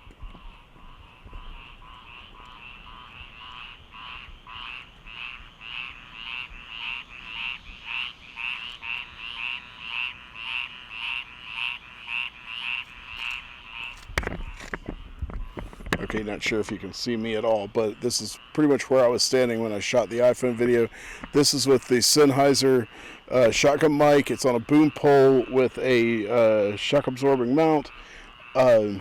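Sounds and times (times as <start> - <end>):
frogs calling: 0.0 - 29.0.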